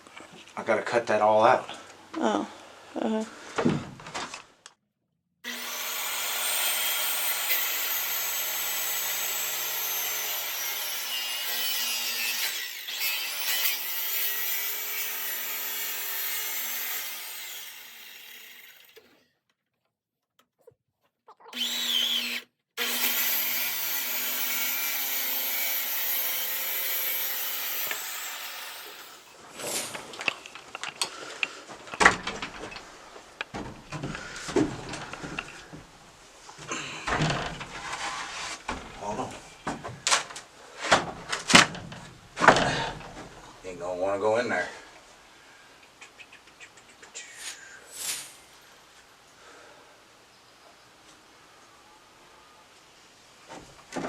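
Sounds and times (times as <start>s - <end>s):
wood knocking and clattering: 3.6s - 4.4s, 31.7s - 36.0s, 36.6s - 43.5s, 53.5s - 54.0s
power saw cutting wood: 5.4s - 19.1s, 21.5s - 29.4s.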